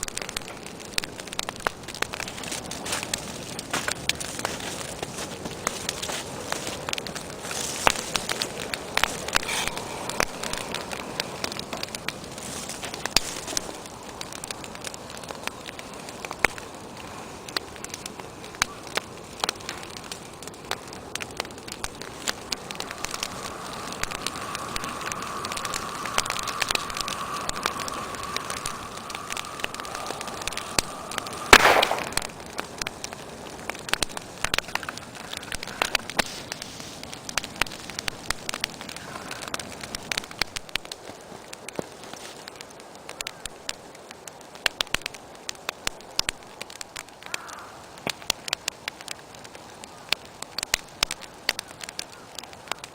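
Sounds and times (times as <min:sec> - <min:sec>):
wood fire crackling: 0:00.0 - 0:52.9
thin steady whistle: 0:08.0 - 0:16.2, 0:22.0 - 0:32.8.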